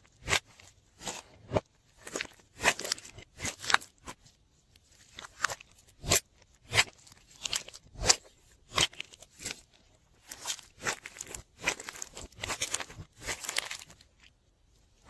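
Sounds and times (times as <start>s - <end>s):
slime crackling and popping: 10.3s - 14.0s.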